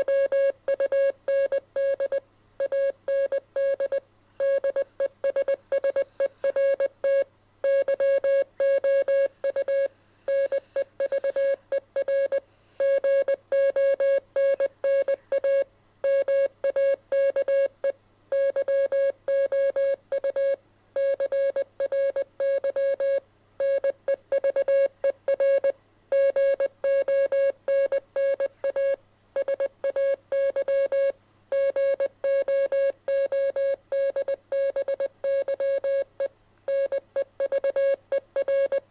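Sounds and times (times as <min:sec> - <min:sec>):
morse code beeps: 0:00.0 - 0:17.7, 0:18.3 - 0:36.1, 0:36.7 - 0:38.9.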